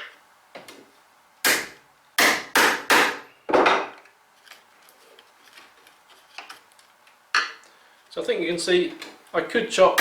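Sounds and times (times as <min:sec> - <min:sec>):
hammer striking chisel: 0:01.4 - 0:03.9.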